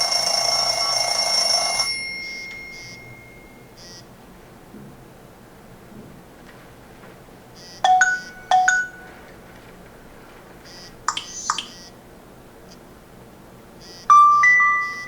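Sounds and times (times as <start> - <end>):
phone beeps: 0.0 - 4.0, 7.6 - 9.2, 10.7 - 11.9, 13.8 - 15.0
chirping alert tone: 11.1 - 11.9.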